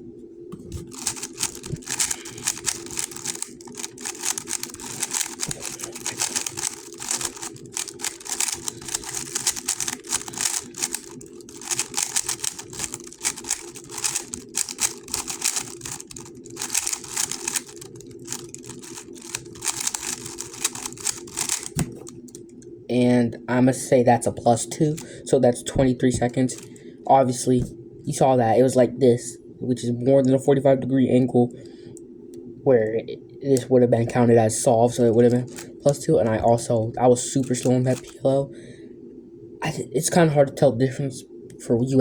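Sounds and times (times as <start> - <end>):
puzzle cube clicking: 0.8 - 22.4, 35.3 - 36.4.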